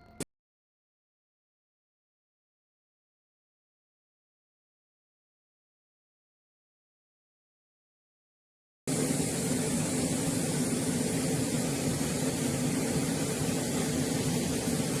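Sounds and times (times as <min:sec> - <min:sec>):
rumbling hissing machine noise: 0:08.9 - 0:15.0.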